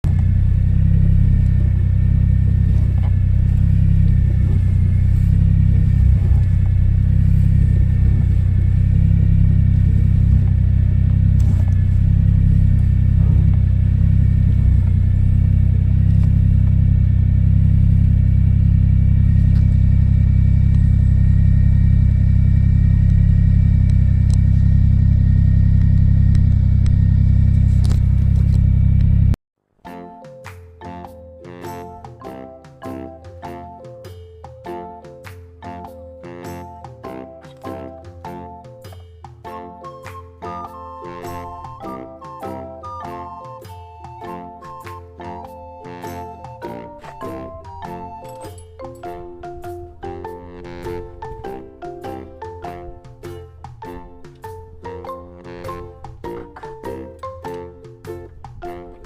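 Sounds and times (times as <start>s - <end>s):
engine low rumble: 0.0s - 29.4s, 46.2s - 59.0s.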